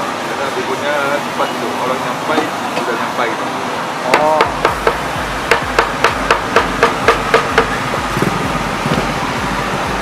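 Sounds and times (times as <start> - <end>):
cleaver chopping on wooden board: 4.1 - 7.8.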